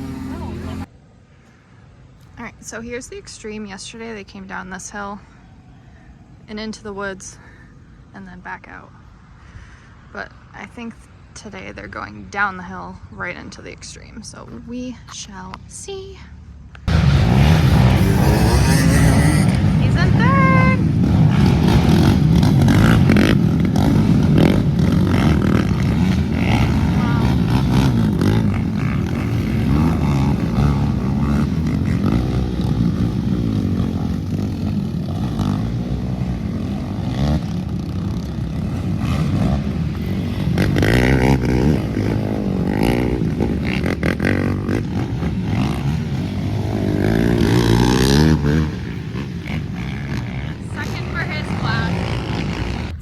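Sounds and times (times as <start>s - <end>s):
quad engines revving: 0.0s - 53.0s.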